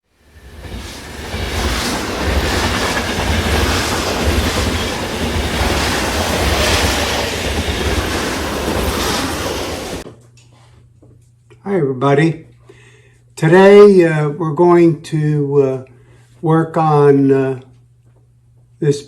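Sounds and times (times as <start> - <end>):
train rumbling on rails: 0.0 - 10.0
wheels clattering: 0.2 - 10.0.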